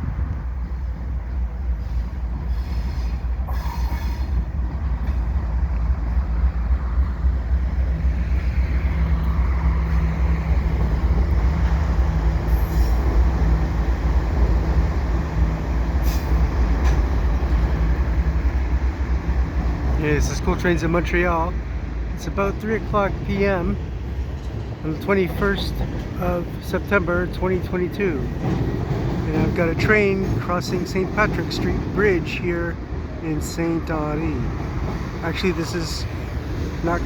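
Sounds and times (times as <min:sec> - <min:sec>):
freight train rumbling past: 0:00.0 - 0:37.0
high wheel squeals: 0:01.8 - 0:04.5.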